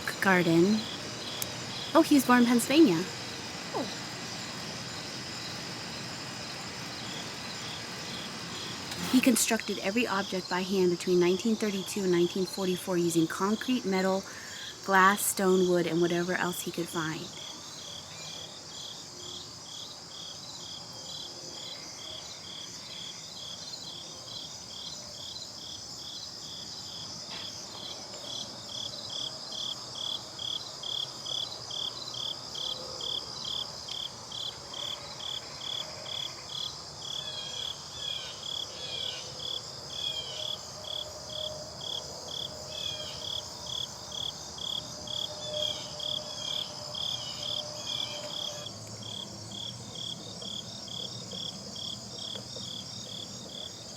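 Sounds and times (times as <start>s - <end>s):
insects high trill: 0.0s - 53.9s
insects pulsed chirping: 0.0s - 53.9s.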